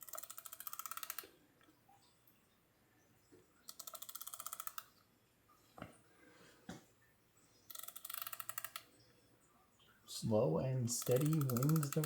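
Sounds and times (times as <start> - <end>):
ratchet wrench clicking: 7.7 - 8.8, 11.0 - 12.0.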